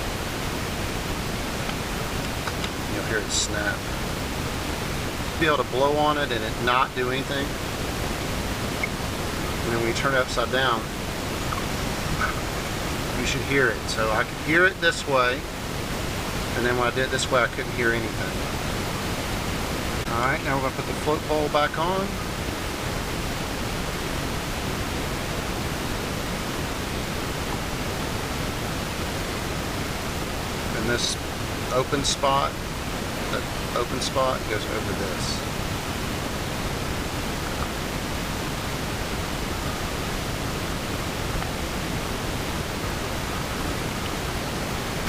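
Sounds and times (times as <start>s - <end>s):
steady background hiss: 0.0s - 45.0s.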